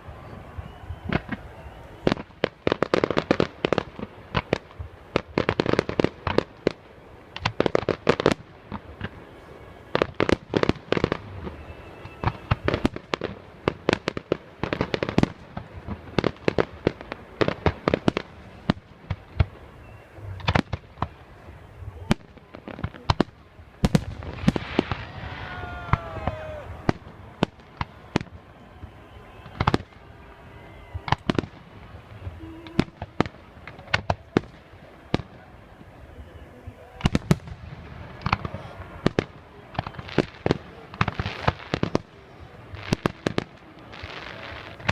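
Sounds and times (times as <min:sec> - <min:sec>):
fireworks bangs and crackle: 0:00.0 - 0:44.9.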